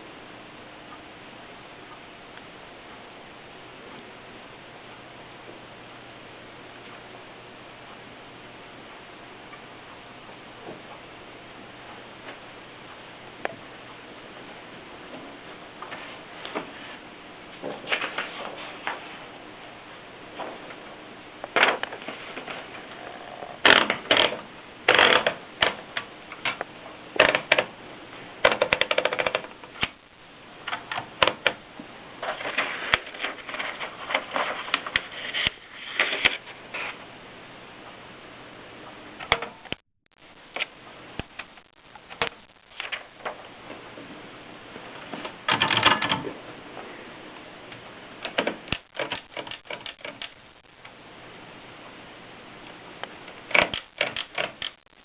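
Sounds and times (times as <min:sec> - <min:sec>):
typewriter clacking: 0:45.5 - 0:46.3, 0:48.2 - 0:50.4, 0:53.5 - 0:54.8.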